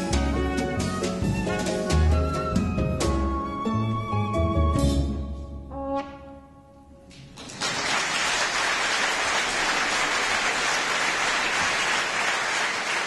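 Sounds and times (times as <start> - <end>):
audience applauding: 7.3 - 13.0.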